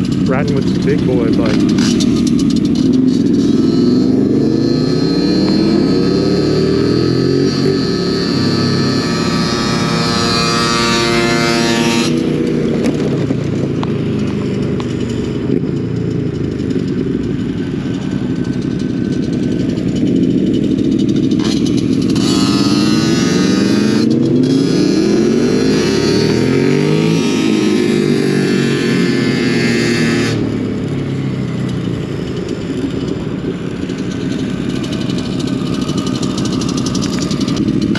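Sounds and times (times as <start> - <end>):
motorcycle engine accelerating: 0.0 - 37.9
road noise: 0.0 - 37.9.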